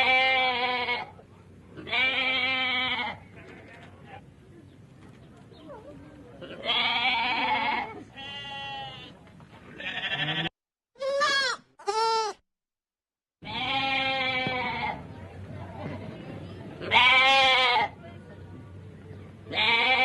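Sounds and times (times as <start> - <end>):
goats bleating: 1.8 - 3.2, 6.4 - 9.1, 9.8 - 12.4, 13.4 - 15.0, 19.5 - 20.0.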